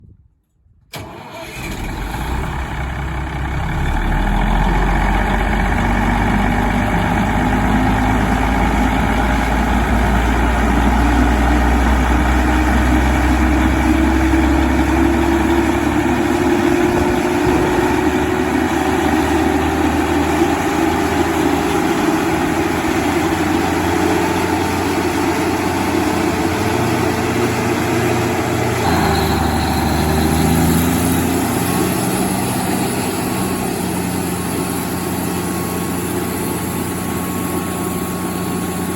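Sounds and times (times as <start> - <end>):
diesel generator running: 0.9 - 38.9
faint rising tone: 26.8 - 34.4.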